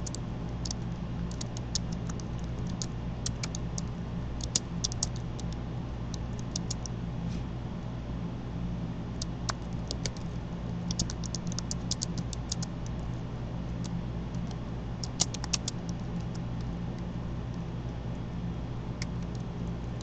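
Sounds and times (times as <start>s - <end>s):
computer keyboard typing: 0.0s - 6.9s, 9.2s - 10.3s, 10.9s - 13.0s, 13.8s - 16.4s
low electrical hum: 0.0s - 20.0s.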